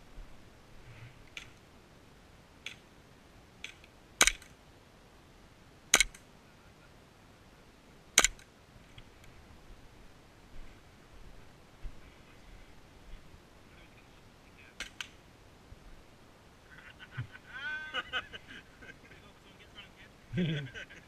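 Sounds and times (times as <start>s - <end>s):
airsoft pistol shots: 3.7s - 4.5s, 5.9s - 6.2s, 8.2s - 8.4s.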